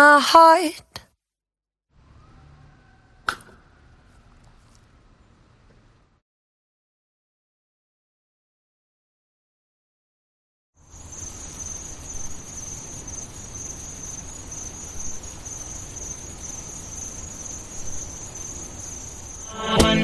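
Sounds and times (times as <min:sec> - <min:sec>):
insects chirring: 0:10.8 - 0:20.0.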